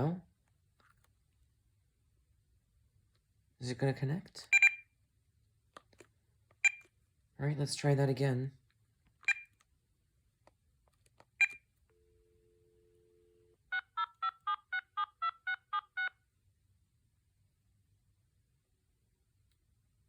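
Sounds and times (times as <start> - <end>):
faint dial tone: 11.4 - 16.2
touch-tone beeps: 13.1 - 16.1.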